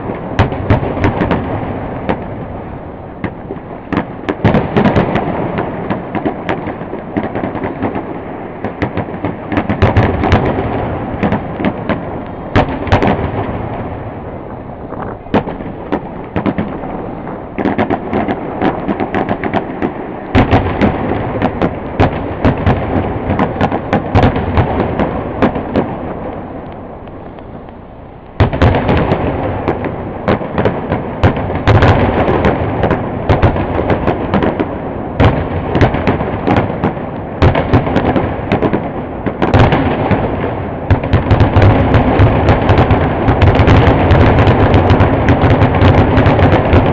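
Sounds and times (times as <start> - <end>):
fireworks bursting: 0.0 - 46.9
rolling rumble: 9.3 - 30.5.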